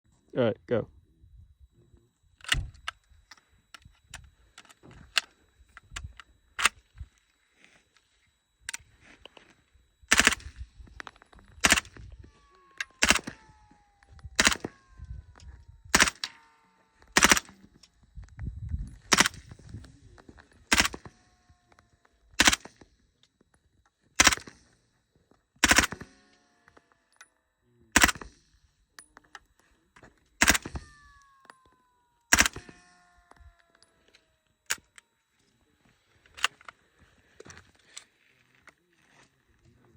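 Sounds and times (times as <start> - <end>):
airsoft gun shots: 10.1 - 10.6, 11.6 - 12.0, 12.8 - 13.6, 14.3 - 14.8, 15.9 - 16.4, 17.2 - 17.5, 19.1 - 19.5, 20.7 - 21.2, 22.4 - 22.8, 24.2 - 24.6, 25.6 - 26.2, 28.0 - 28.4, 30.4 - 31.2, 32.3 - 32.9.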